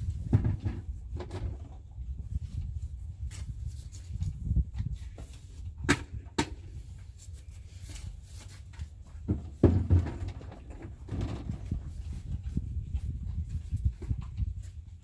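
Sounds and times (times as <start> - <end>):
heavy thumps and clatter: 0.0 - 1.8, 9.1 - 12.5.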